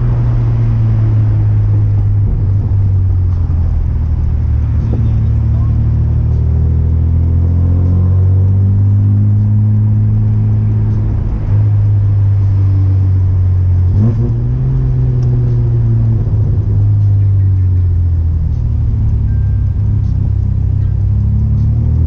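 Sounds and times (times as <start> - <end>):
car engine while driving: 0.0 - 22.0.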